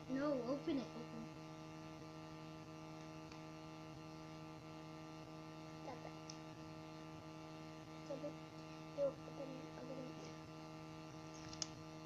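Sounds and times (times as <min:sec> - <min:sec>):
electrical mains hum: 0:00.0 - 0:12.0
faint voice: 0:09.0 - 0:10.4.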